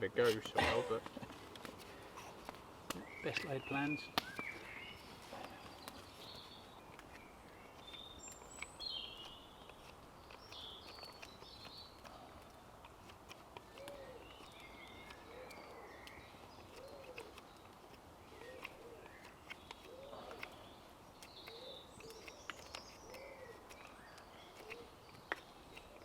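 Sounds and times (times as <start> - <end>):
small birds chirping: 0.0 - 26.0
pigeon cooing: 13.8 - 14.3, 16.8 - 17.3, 18.3 - 19.1, 19.8 - 20.6, 23.1 - 23.6.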